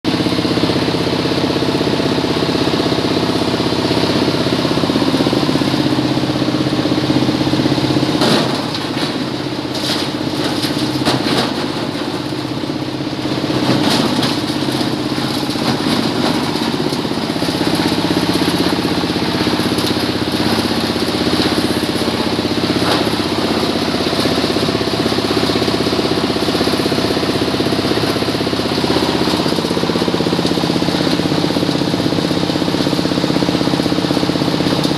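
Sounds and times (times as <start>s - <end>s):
grinder engine running: 0.0s - 34.9s
sharp knocks and crackles: 8.0s - 12.6s, 13.5s - 34.9s.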